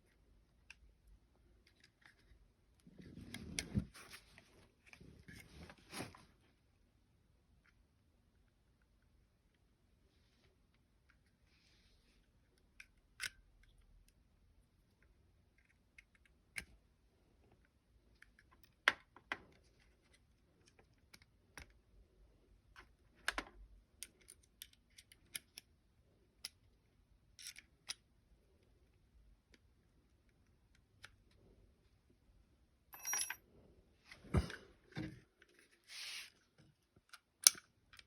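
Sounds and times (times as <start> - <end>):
pistol parts clicking and tapping: 37.1 - 38.0.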